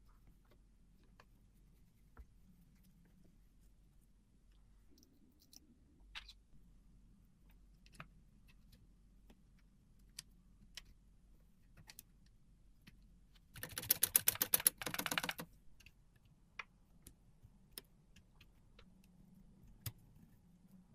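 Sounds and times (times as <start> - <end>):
typewriter keystrokes: 13.6 - 15.5.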